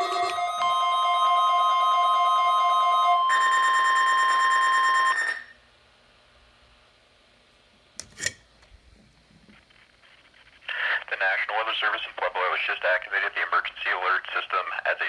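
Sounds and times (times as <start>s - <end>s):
steady high alarm tone: 0.0s - 5.6s.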